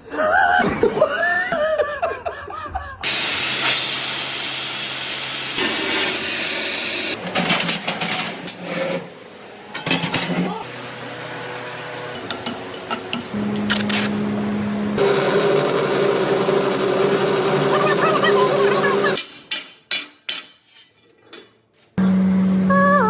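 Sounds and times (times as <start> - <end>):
loud rushing hiss: 3.1 - 7.2
person calling out: 17.6 - 19.2.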